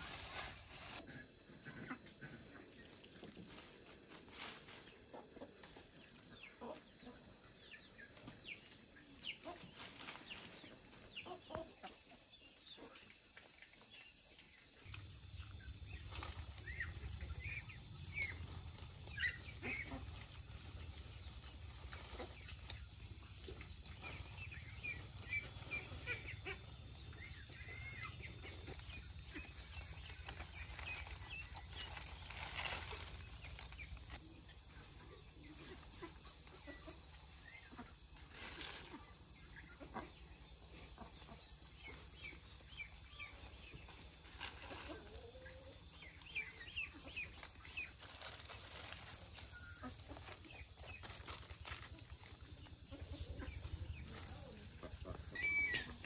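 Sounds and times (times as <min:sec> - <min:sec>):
bird chirps: 0:55.3 - 0:56.0.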